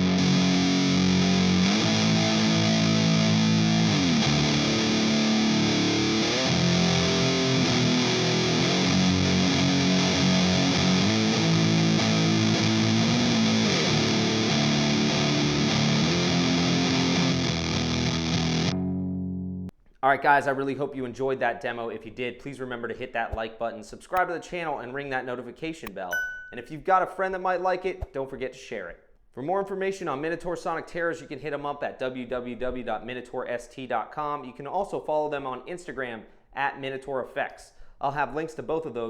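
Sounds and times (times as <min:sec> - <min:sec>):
fuzzed electric guitar riff: 0:00.0 - 0:19.7.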